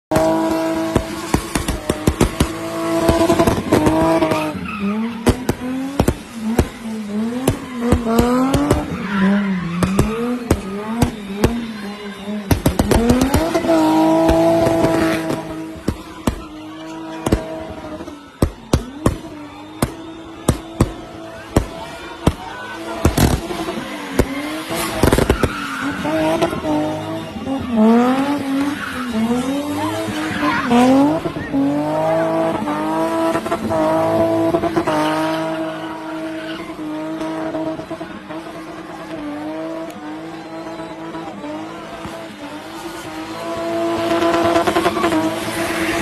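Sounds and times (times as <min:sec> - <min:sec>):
car engine revving high: 0:00.1 - 0:46.0
tyres squealing and skidding: 0:00.1 - 0:46.0
sharp cracks: 0:00.2 - 0:04.6, 0:12.4 - 0:16.6, 0:18.4 - 0:26.6.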